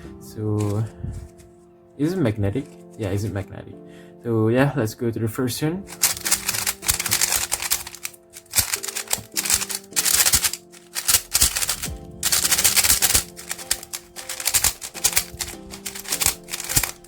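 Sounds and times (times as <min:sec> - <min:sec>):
background music: 0:00.0 - 0:17.0
puzzle cube clacking: 0:05.9 - 0:17.0.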